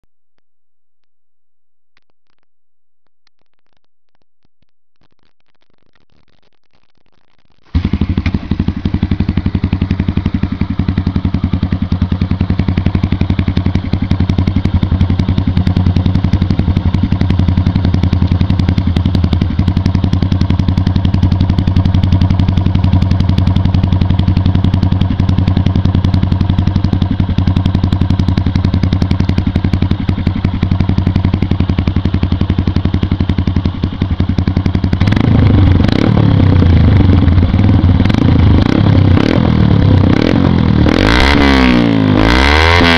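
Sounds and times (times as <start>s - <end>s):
motorcycle engine idling and revving: 7.7s - 42.9s.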